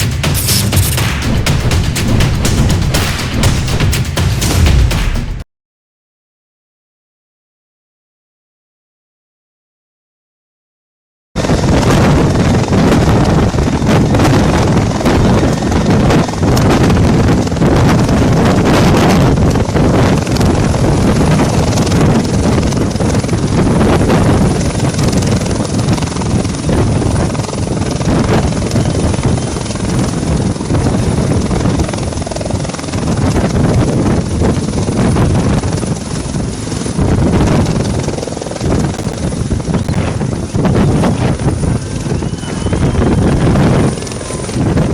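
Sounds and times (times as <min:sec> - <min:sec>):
high-pitched whine: 0:00.0 - 0:02.7, 0:38.8 - 0:44.9
helicopter rotor and engine: 0:11.4 - 0:44.9.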